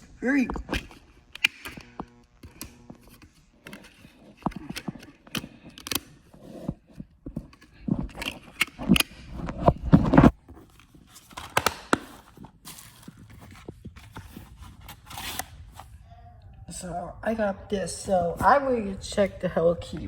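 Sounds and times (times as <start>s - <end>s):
packaging rustling: 3.0s - 16.0s
packaging clicks and knocks: 7.1s - 14.5s.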